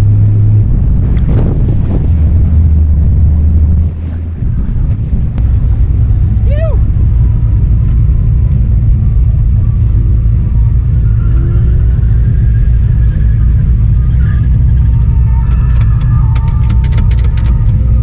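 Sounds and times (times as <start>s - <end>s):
vehicle engine rumbling: 0.0s - 18.0s
sharp clicks: 15.2s - 17.9s.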